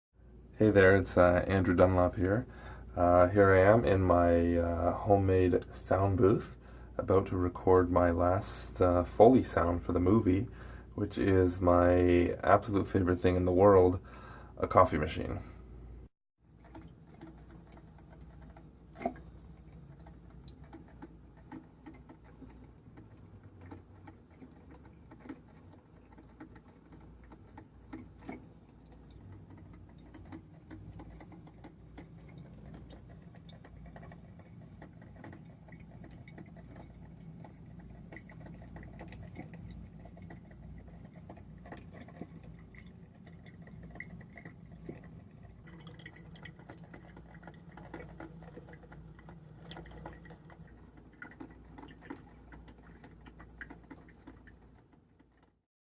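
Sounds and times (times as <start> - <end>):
coffee machine low hum: 0.3 - 55.5
coffee machine clicks and ticks: 16.5 - 55.6.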